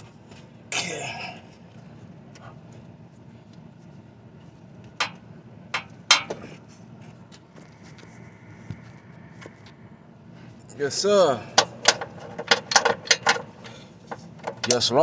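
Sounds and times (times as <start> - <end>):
low steady hum: 0.0 - 15.0
handling knocks and clicks: 4.8 - 6.5, 11.6 - 14.9.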